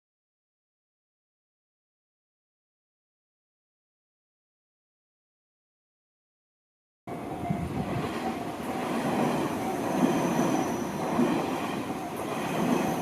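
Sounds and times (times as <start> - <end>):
electric train rumbling past: 7.1 - 13.0.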